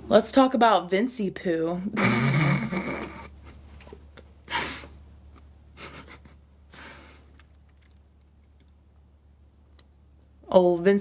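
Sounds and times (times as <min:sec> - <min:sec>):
short breathy puffs: 0:05.8 - 0:07.4.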